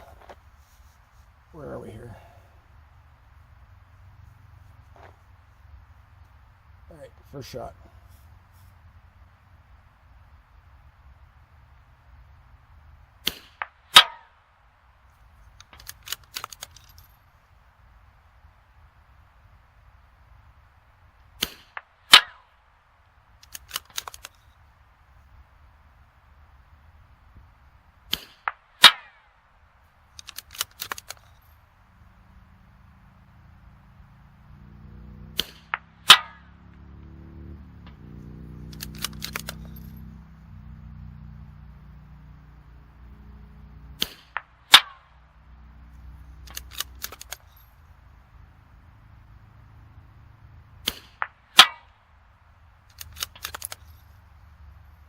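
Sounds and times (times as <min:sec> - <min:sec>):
rifle shot: 0:13.2 - 0:14.4, 0:21.4 - 0:22.4, 0:28.1 - 0:29.3, 0:35.3 - 0:36.5, 0:44.0 - 0:45.2, 0:50.8 - 0:52.0
small clicks: 0:15.4 - 0:17.2, 0:23.4 - 0:24.6, 0:30.1 - 0:31.5, 0:38.7 - 0:40.0, 0:46.4 - 0:47.7, 0:52.8 - 0:54.2
rifle bolt metallic clicks: 0:15.6 - 0:17.1, 0:23.4 - 0:24.5, 0:30.2 - 0:31.5, 0:38.7 - 0:40.0, 0:46.4 - 0:47.7, 0:52.9 - 0:54.0.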